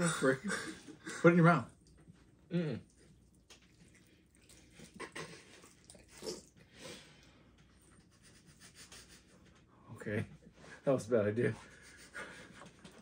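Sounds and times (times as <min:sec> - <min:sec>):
wet chewing mouth sounds: 0:01.8 - 0:06.7.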